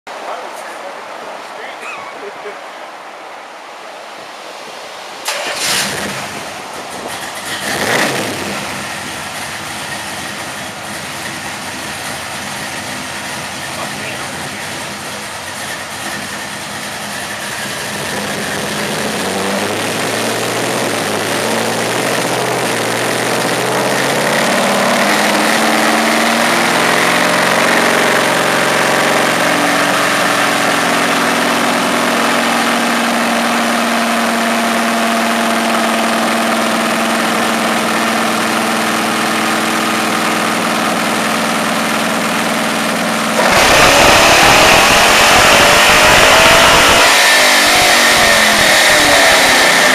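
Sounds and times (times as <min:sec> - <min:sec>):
engine revving on a dyno: 0:07.2 - 0:12.9, 0:13.8 - 0:49.9.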